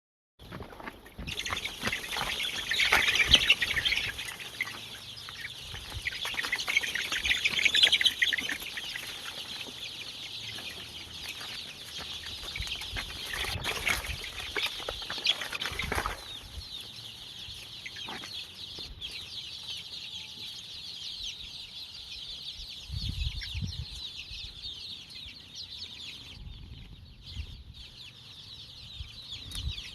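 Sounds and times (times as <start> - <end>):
chickens clucking: 0.4 - 29.9
wings flapping: 0.8 - 4.6.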